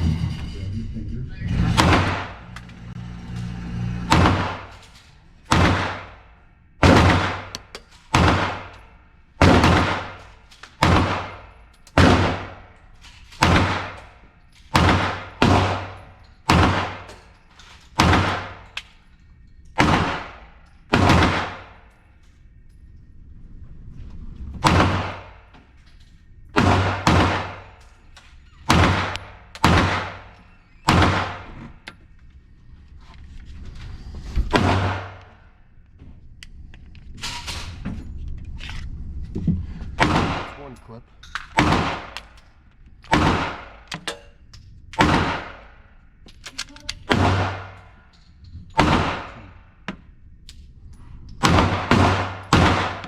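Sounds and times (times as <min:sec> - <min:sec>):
pistol shots: 0:01.8 - 0:02.4, 0:04.1 - 0:17.3, 0:18.0 - 0:18.8, 0:19.8 - 0:21.9, 0:24.6 - 0:25.4, 0:26.5 - 0:27.8, 0:28.7 - 0:31.7, 0:34.5 - 0:35.4, 0:40.0 - 0:40.8, 0:41.4 - 0:42.4, 0:43.0 - 0:44.2, 0:45.0 - 0:45.9, 0:47.0 - 0:48.0, 0:48.8 - 0:49.9, 0:51.4 - 0:53.0.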